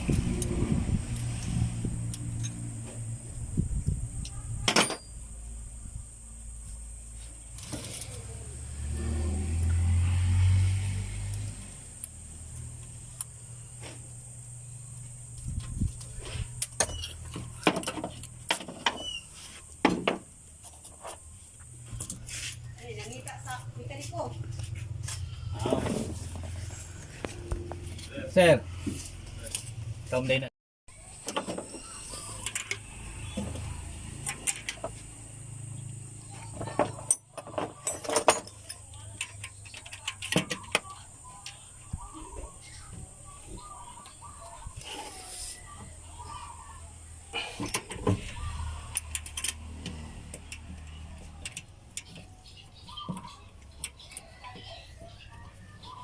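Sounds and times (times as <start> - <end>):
metal tools clinking: 4.7 - 5.3, 36.8 - 40.8.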